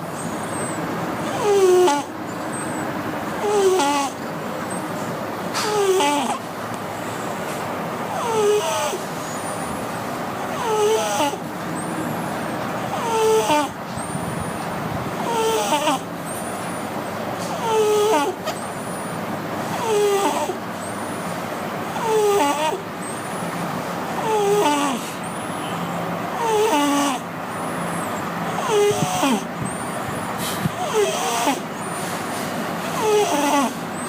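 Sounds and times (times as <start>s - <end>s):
cat snoring with whistle: 0.2s - 2.8s, 3.4s - 4.2s, 5.6s - 6.4s, 8.1s - 9.8s, 10.5s - 11.4s, 12.9s - 14.5s, 15.2s - 16.1s, 17.5s - 18.4s, 19.7s - 20.6s, 22.0s - 22.8s, 24.2s - 31.8s, 33.0s - 34.0s.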